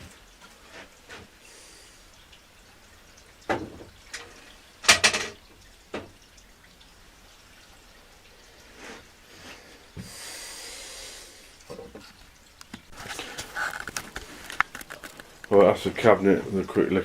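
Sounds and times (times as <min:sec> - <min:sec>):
short knocks and clatters: 0:03.5 - 0:06.2.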